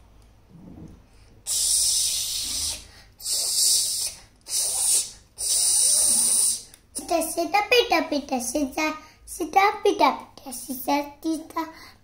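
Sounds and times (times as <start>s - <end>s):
mouth hissing: 1.5s - 6.7s.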